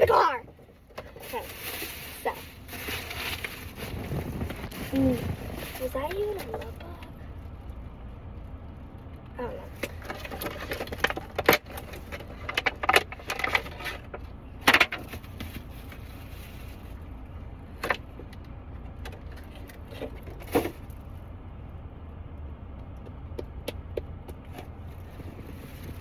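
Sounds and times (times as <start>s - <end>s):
car cabin rumble: 0.0s - 26.0s
handling knocks and rustles: 9.7s - 17.1s.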